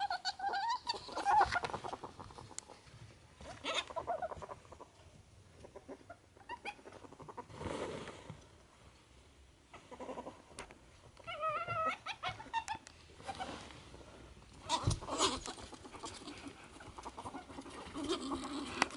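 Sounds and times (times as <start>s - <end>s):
ferret dooking clucks: 0.0s - 2.8s, 3.4s - 5.0s, 5.6s - 7.5s, 9.7s - 13.5s, 14.6s - 18.9s
ferrets scuffling: 13.2s - 18.9s.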